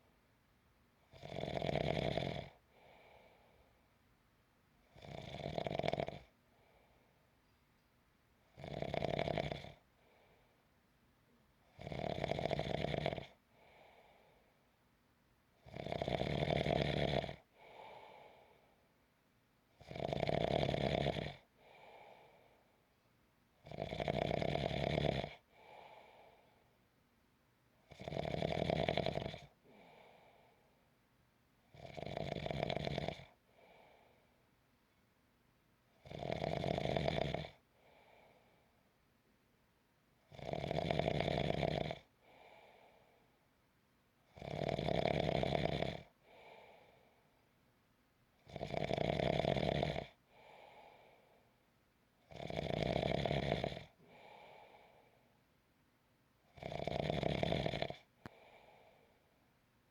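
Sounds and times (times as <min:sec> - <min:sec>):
person snoring: 0:01.2 - 0:02.5, 0:08.6 - 0:09.8, 0:19.8 - 0:21.4, 0:28.0 - 0:29.9, 0:44.4 - 0:46.1, 0:48.5 - 0:50.2, 0:52.3 - 0:54.7, 0:56.6 - 0:58.7
faint breath: 0:02.6 - 0:04.0, 0:06.4 - 0:07.9, 0:09.8 - 0:10.8, 0:13.4 - 0:14.8, 0:17.4 - 0:19.0, 0:21.5 - 0:23.0, 0:25.4 - 0:26.9, 0:29.6 - 0:31.0, 0:33.4 - 0:34.5, 0:37.7 - 0:38.9, 0:42.2 - 0:43.5, 0:46.2 - 0:47.5, 0:50.2 - 0:51.7, 0:54.0 - 0:55.4, 0:58.1 - 0:59.5.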